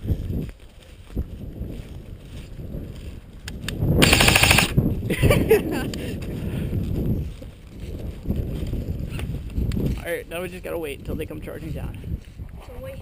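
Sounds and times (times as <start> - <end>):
rapid clicks burst: 4.0 - 4.8.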